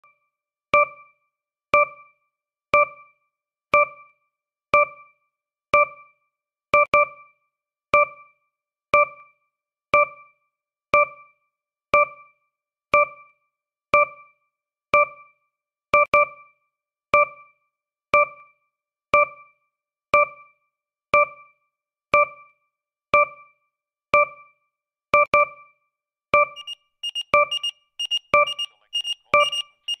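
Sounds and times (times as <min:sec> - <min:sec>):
piano-like electronic timer tick: 0:02.8 - 0:03.1, 0:03.8 - 0:04.1, 0:09.0 - 0:09.3, 0:11.0 - 0:11.3, 0:13.0 - 0:13.3, 0:15.0 - 0:15.3, 0:16.0 - 0:16.4, 0:18.2 - 0:18.5, 0:19.2 - 0:19.5, 0:20.2 - 0:20.5, 0:22.2 - 0:22.5, 0:24.2 - 0:24.5, 0:25.2 - 0:25.6, 0:26.4 - 0:30.0
high electronic alarm beeps: 0:26.4 - 0:30.0.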